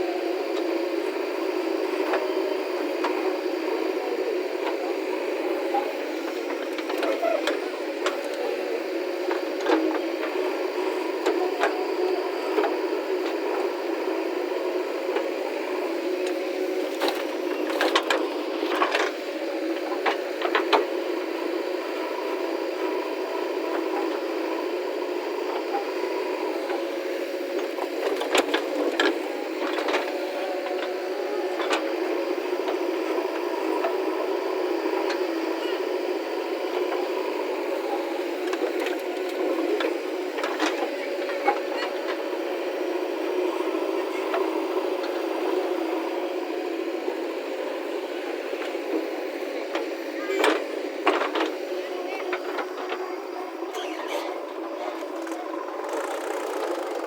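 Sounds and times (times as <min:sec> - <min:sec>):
diesel engine running: 0:54.3 - 0:57.0.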